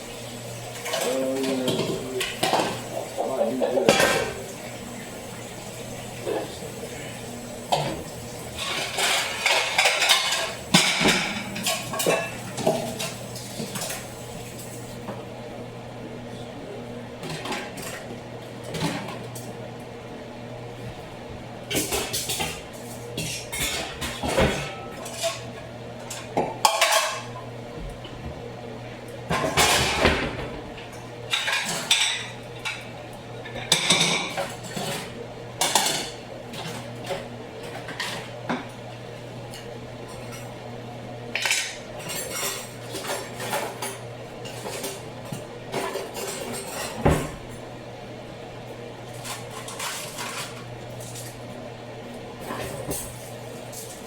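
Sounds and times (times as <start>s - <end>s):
pots and pans clattering: 0.5s - 5.2s, 5.8s - 14.8s, 17.2s - 19.5s, 21.7s - 28.3s, 29.3s - 38.8s, 41.3s - 47.7s, 49.1s - 51.4s, 52.4s - 54.0s.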